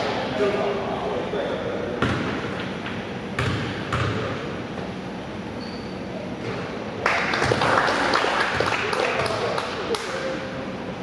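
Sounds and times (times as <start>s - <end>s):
murmur of gymnasium: 0.0s - 11.0s
basketball bouncing on hardwood floor: 2.0s - 2.3s, 3.4s - 4.2s.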